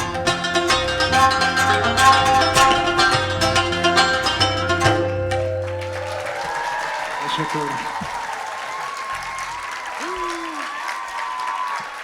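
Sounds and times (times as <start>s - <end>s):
hand drum strokes: 0.0s - 6.2s
rapid plucked string notes: 0.0s - 6.2s.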